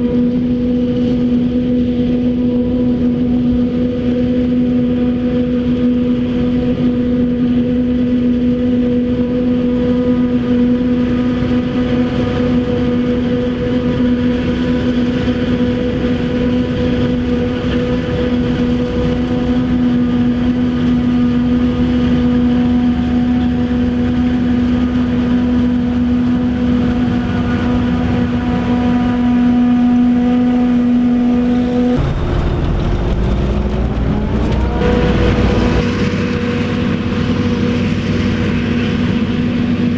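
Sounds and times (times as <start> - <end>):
engine rising in pitch: 0.2 - 39.9
harvesting machinery hum: 12.1 - 39.9.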